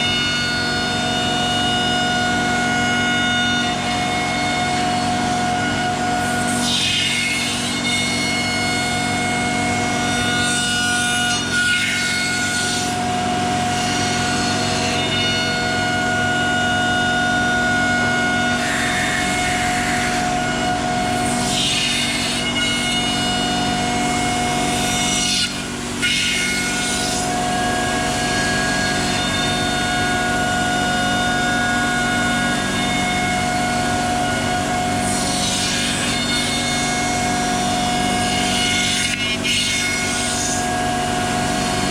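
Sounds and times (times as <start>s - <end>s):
router spindle whine: 0.0s - 41.9s
bit cutting wood: 17.4s - 41.9s.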